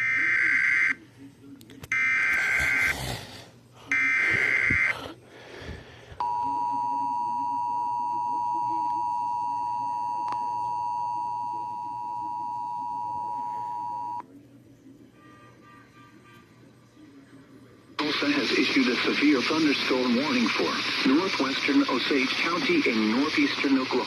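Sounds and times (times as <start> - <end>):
digital header bursts: 2.0 - 3.0.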